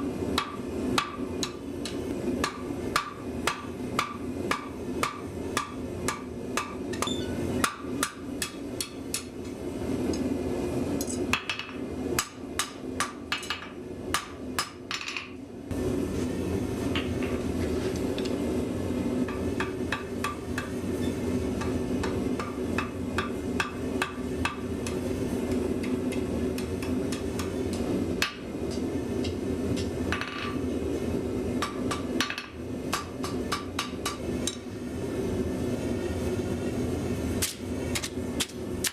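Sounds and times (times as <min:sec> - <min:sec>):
steady low hum: 0:00.0 - 0:38.9
hammer striking steel on anvil: 0:00.3 - 0:09.3, 0:11.0 - 0:15.4, 0:19.2 - 0:20.8, 0:21.6 - 0:25.0, 0:31.6 - 0:34.6.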